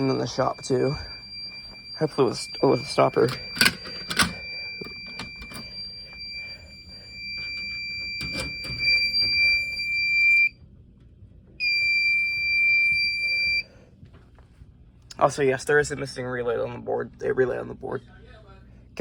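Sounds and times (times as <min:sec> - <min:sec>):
fire alarm tone: 0:00.0 - 0:10.6, 0:11.6 - 0:13.7.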